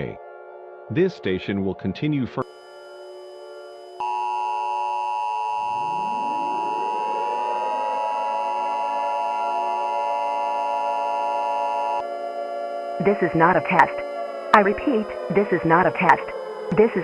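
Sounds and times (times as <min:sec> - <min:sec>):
electronic emergency alert tone: 0:02.4 - 0:17.0
low tones gliding upward: 0:05.3 - 0:17.0.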